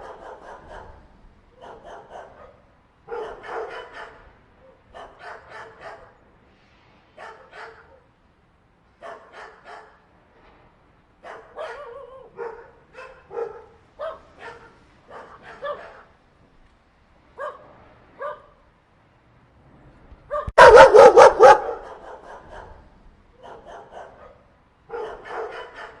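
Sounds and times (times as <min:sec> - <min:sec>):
dogs barking: 0:00.0 - 0:06.2, 0:07.2 - 0:08.0, 0:09.0 - 0:10.0, 0:11.2 - 0:16.2, 0:17.4 - 0:18.6, 0:20.3 - 0:22.8, 0:23.4 - 0:26.0.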